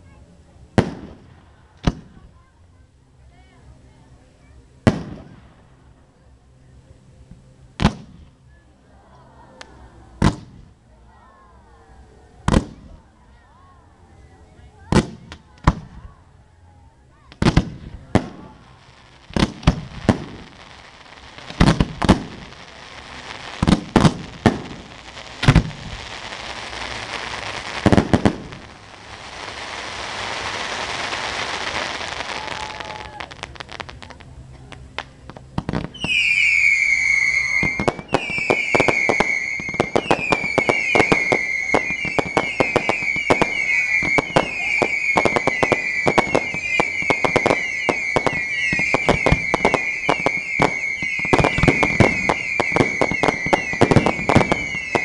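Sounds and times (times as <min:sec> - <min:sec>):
fireworks crackling hiss: 0:00.0 - 0:02.7, 0:17.3 - 0:55.0
fireworks bangs: 0:00.8 - 0:02.4, 0:04.8 - 0:05.7, 0:07.8 - 0:08.3, 0:10.2 - 0:10.7, 0:12.4 - 0:13.0, 0:17.3 - 0:55.0
short falling whistles: 0:36.0 - 0:55.0.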